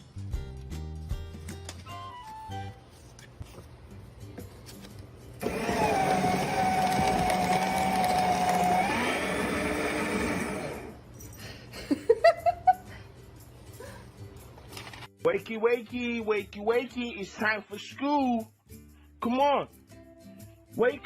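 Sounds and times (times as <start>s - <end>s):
electric motor whining: 5.4s - 11.0s.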